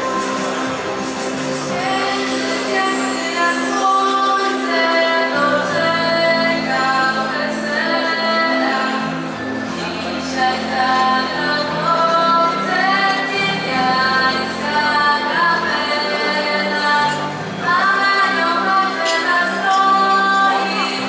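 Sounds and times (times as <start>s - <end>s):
instrumental accompaniment: 0.0s - 14.0s
women singing a carol: 0.0s - 21.0s.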